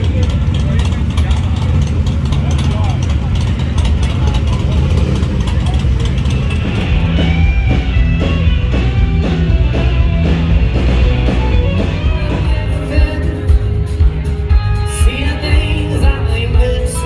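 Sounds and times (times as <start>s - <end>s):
rock music with guitar: 5.0s - 17.0s.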